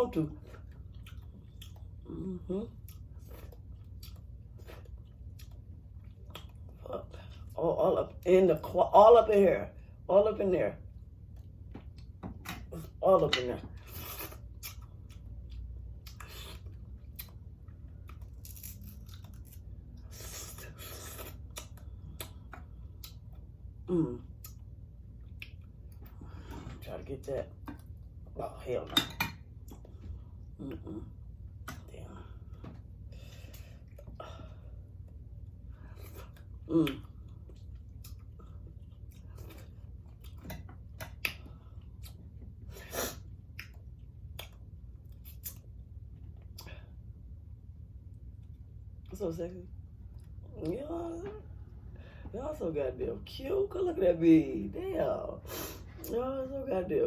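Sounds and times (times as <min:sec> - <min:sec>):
close chewing: 0:00.4 - 0:07.4
crab shells cracking and tearing: 0:18.1 - 0:19.6.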